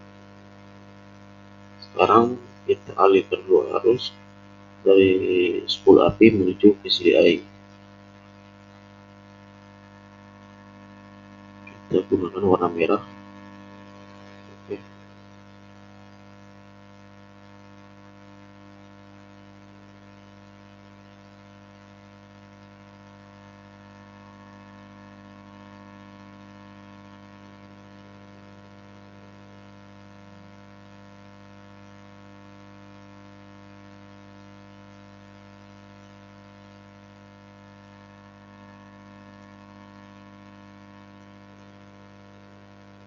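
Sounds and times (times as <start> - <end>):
electrical hum and buzz: 1.4 - 16.2, 22.4 - 28.6, 35.6 - 43.0
background hiss: 1.8 - 4.2, 4.9 - 7.5, 11.6 - 14.9.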